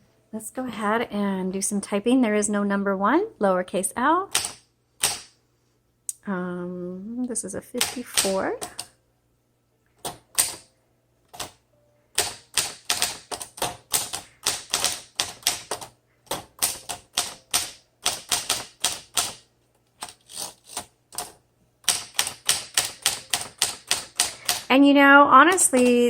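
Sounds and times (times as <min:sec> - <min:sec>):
manual typewriter typing: 0:04.3 - 0:05.3, 0:07.8 - 0:08.9, 0:10.0 - 0:10.7, 0:11.3 - 0:11.6, 0:12.2 - 0:19.4, 0:20.0 - 0:24.8, 0:25.4 - 0:26.0.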